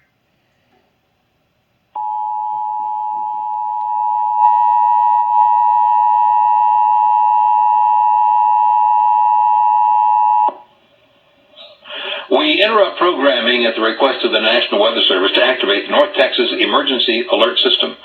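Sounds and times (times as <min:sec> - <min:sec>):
two-tone alarm: 0:02.0 - 0:10.6.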